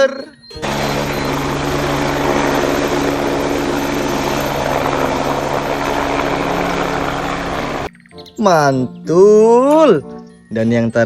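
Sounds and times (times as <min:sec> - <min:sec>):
helicopter rotor beating: 0:00.0 - 0:07.9
helicopter engine drone: 0:00.4 - 0:07.9.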